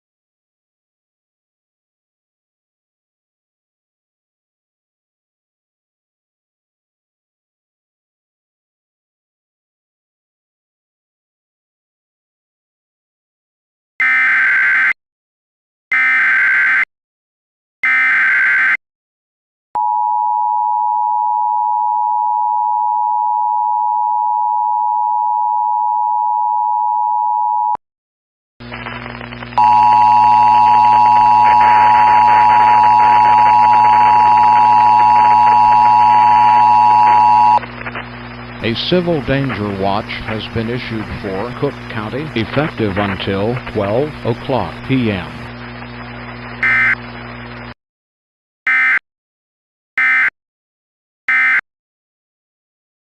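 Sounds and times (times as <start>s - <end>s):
hiss and hum: 37.1s - 47.7s
screeching data bursts: 46.6s - 47.0s.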